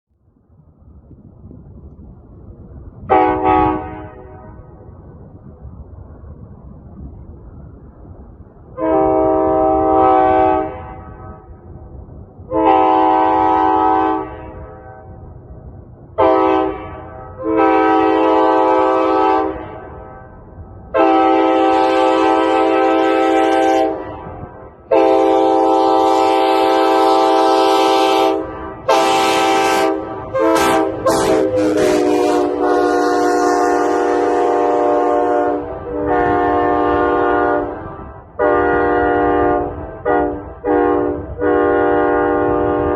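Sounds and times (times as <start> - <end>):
air horn blasts: 3.1 - 4.6, 8.8 - 11.4, 12.5 - 15.2, 16.2 - 19.9, 20.9 - 42.9.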